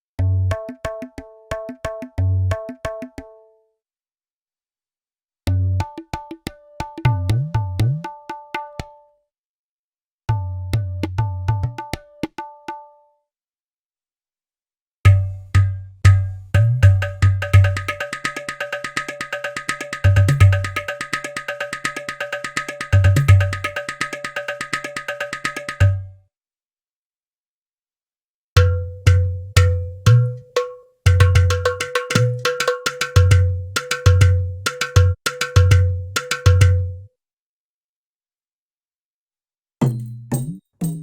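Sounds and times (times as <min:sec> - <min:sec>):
hand drum patterns: 0:15.1 - 0:26.1, 0:28.6 - 0:37.0, 0:39.8 - 0:41.0.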